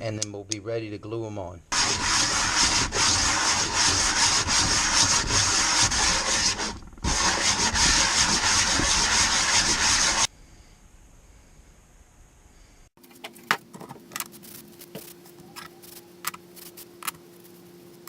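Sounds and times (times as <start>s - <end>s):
sanding rasp: 1.7s - 10.3s.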